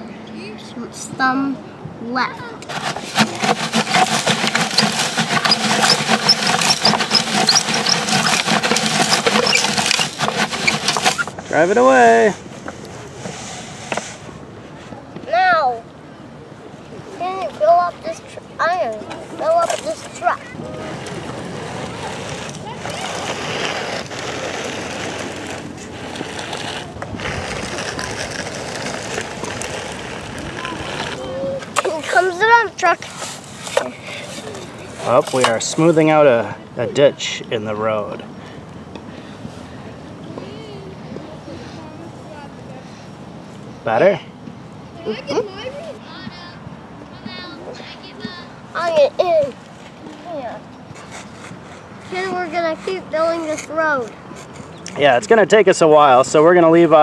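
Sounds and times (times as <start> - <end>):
toy truck scraping gravelly dirt: 2.6 - 12.4, 17.6 - 36.5, 50.3 - 57.0.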